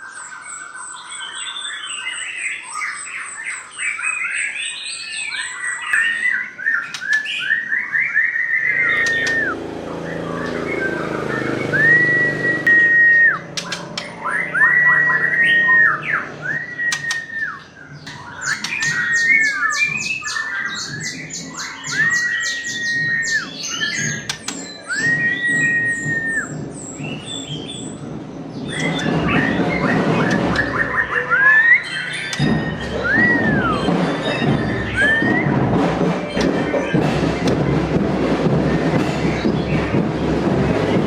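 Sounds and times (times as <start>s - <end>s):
songbird whistled notes: 0.0s - 41.0s
bird chattering trills: 5.3s - 41.0s.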